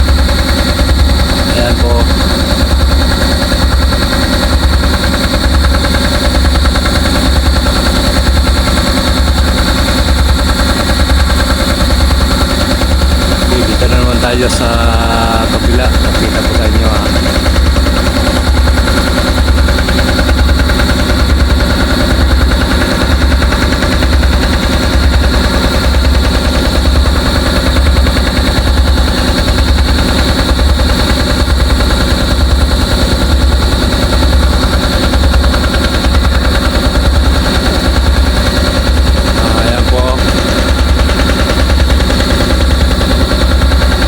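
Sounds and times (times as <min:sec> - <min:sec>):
vibratory pile hammer rattling: 0:00.0 - 0:44.0.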